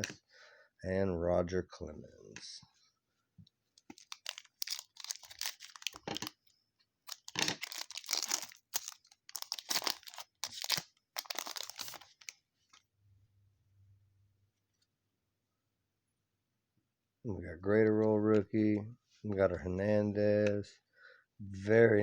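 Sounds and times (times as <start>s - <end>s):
wrapper tearing and crinkling: 3.8s - 6.4s, 7.0s - 12.3s.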